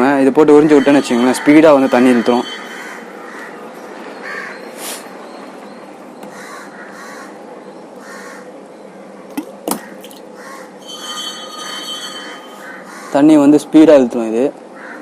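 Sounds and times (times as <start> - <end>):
crows cawing: 0.5 - 4.8, 6.2 - 7.4, 8.0 - 8.6, 9.7 - 13.4, 14.7 - 15.0
sharp knocks: 9.3 - 10.2.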